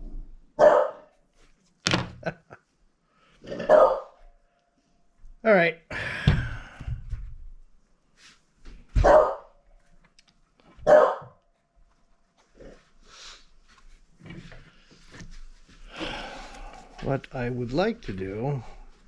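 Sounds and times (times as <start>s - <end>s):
dog barking: 0.6s - 1.1s, 3.6s - 4.2s, 9.0s - 9.5s, 10.8s - 11.4s.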